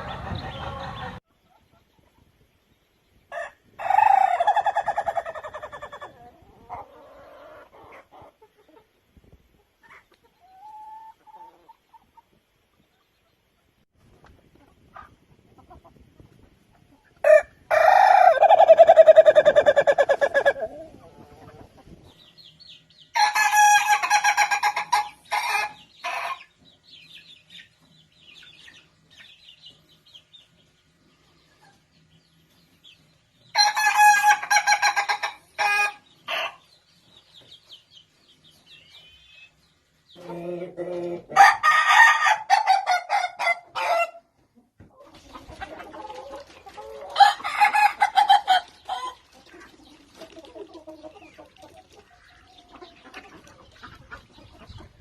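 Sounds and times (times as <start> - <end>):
roosters crowing: 3.3 - 5.8, 17.2 - 20.8, 23.1 - 26.4, 33.5 - 36.6, 40.2 - 44.2, 47.0 - 49.2.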